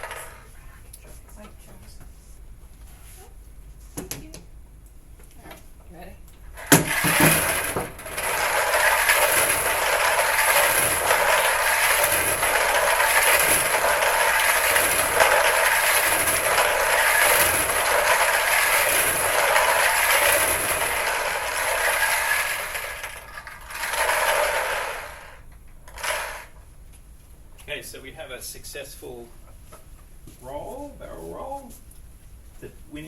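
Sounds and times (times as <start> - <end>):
lottery balls rattling in drum: 0.0 - 0.5, 6.5 - 26.6.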